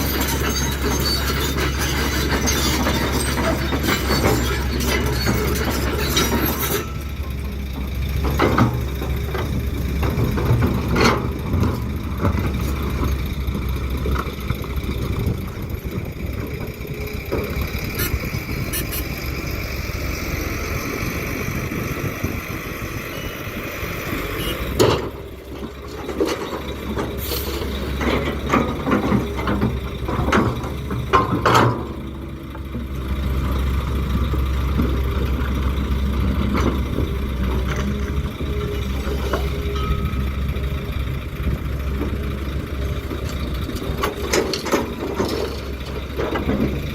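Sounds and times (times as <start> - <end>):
diesel machinery engines running: 0.0 - 46.9.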